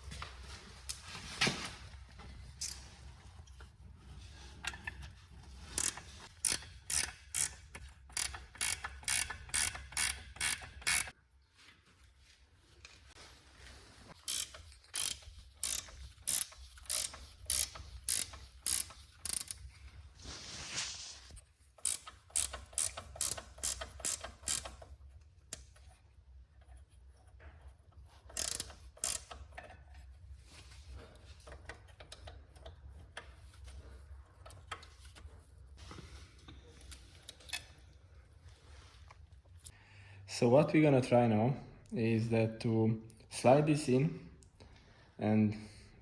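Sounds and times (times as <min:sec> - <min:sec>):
ratchet wrench clicking: 0:02.6 - 0:02.8, 0:05.8 - 0:11.1, 0:14.3 - 0:19.6, 0:21.8 - 0:24.9, 0:28.3 - 0:29.7.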